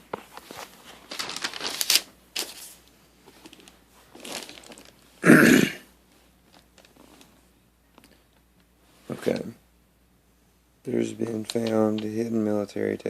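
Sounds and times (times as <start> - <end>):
crinkling handling noise: 0.0 - 5.2, 6.0 - 9.6, 10.9 - 12.8
person coughing: 5.2 - 5.9.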